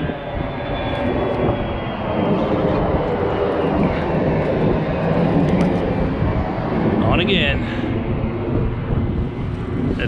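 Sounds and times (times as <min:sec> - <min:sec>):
engine drone: 0:00.0 - 0:10.0.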